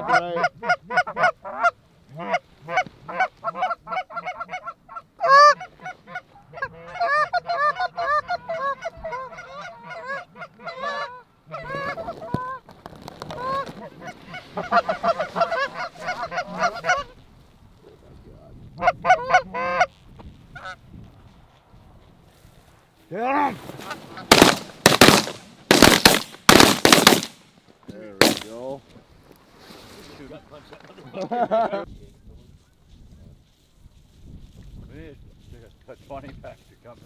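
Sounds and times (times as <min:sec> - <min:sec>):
goose honking and clucking: 0:00.0 - 0:12.1.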